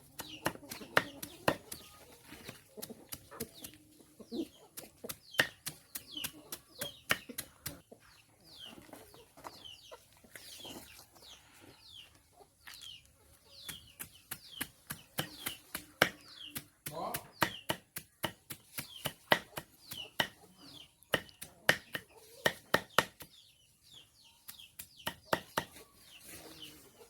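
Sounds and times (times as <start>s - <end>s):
beaks pecking at feed: 0.0s - 11.3s, 12.6s - 22.4s
chickens calling: 0.0s - 27.0s.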